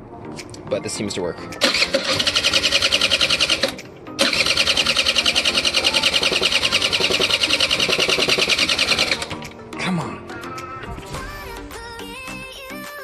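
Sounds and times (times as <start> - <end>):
scooter starter cranking: 1.6 - 9.5.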